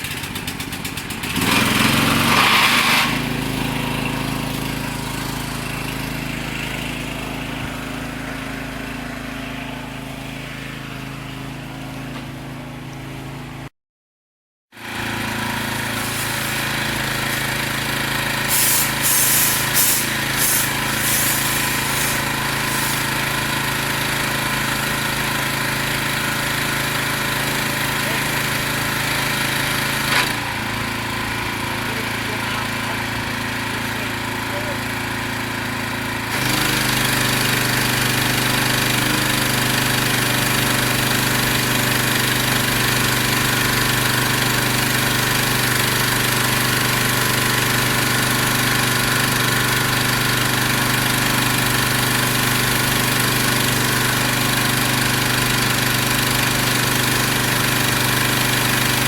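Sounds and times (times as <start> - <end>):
pressure washer running: 0.0 - 13.7, 14.8 - 59.0
water jet hissing: 15.8 - 17.8, 18.4 - 23.6.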